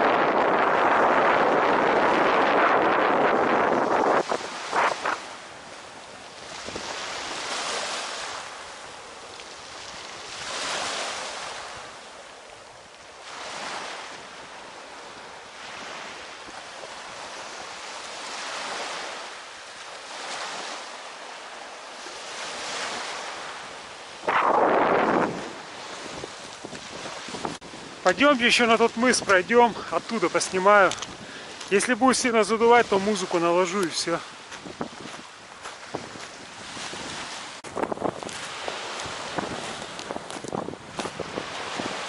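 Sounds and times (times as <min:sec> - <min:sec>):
wind buffeting microphone: 0:00.0 - 0:08.4, 0:22.3 - 0:31.8, 0:34.2 - 0:42.0
sea waves breaking on shore: 0:00.0 - 0:42.0
steady wind: 0:00.0 - 0:42.0.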